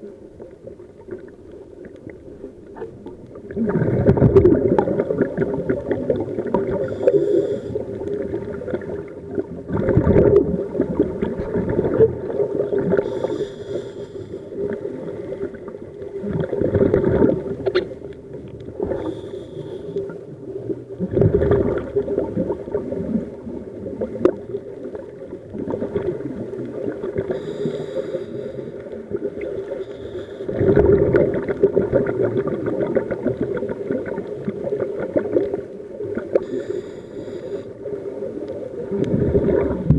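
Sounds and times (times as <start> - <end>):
gurgling rush of exhaust bubbles: 3.4 - 7.0, 8.2 - 13.1, 15.5 - 17.8, 20.9 - 27.3, 30.5 - 36.4, 38.8 - 39.9
diver inhaling through regulator hiss: 6.7 - 8.2, 12.8 - 15.6, 18.8 - 20.2, 27.3 - 28.9, 29.7 - 30.8, 36.4 - 38.0.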